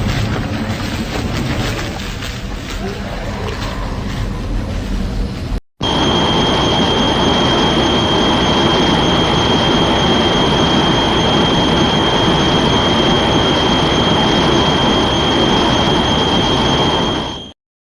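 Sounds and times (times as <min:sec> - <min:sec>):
monster roar screech: 0:02.8 - 0:04.3.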